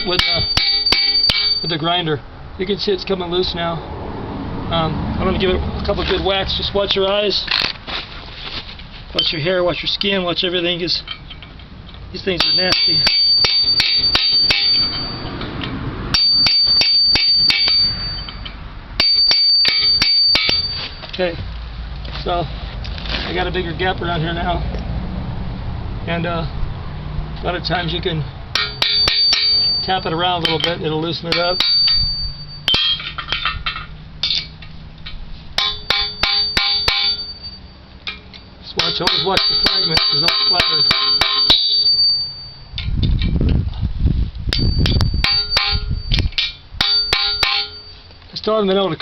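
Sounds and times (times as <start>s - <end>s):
hammer striking steel chisel: 0.0s - 1.8s, 12.4s - 15.3s, 16.2s - 21.1s, 28.6s - 34.5s, 35.6s - 42.4s, 44.5s - 48.0s.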